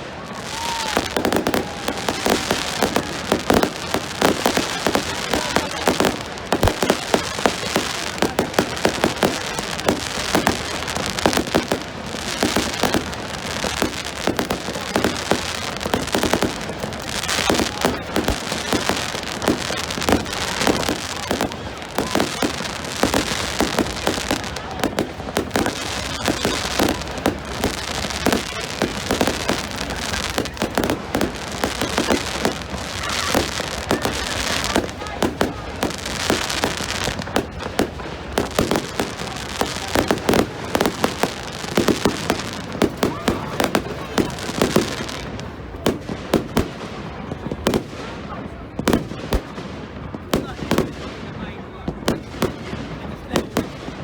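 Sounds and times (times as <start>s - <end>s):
fireworks crackling: 0.0s - 54.0s
loud firework bangs: 0.3s - 54.0s.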